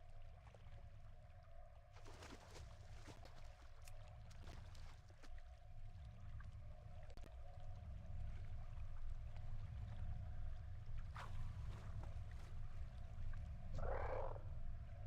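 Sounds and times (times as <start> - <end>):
faint constant hum: 0.0 - 15.0
low rumbling background noise: 0.0 - 15.0.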